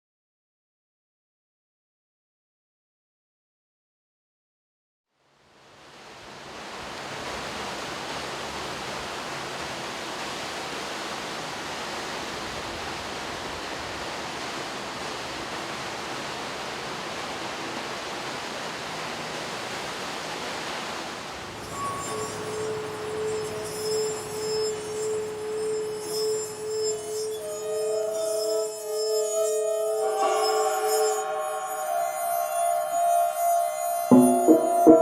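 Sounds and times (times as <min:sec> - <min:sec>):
ringing bell-like tones: 0:21.6 - 0:27.3, 0:27.9 - 0:35.0.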